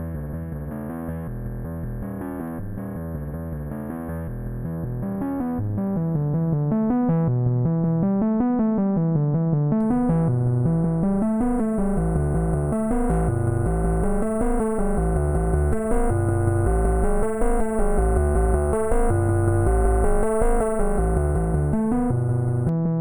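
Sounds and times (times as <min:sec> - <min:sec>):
distorted synthesizer sequence: 0:09.8 - 0:22.7
high-pitched buzzy synth layer: 0:09.8 - 0:22.7.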